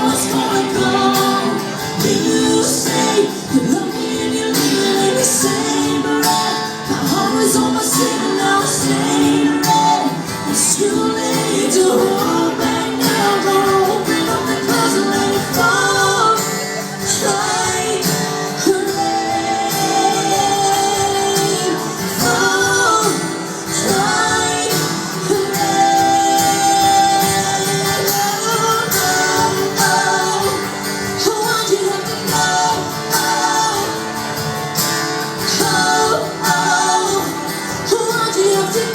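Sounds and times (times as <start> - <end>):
woman singing: 0.0 - 34.6, 35.2 - 38.9
country band with guitar and drums: 0.0 - 38.9.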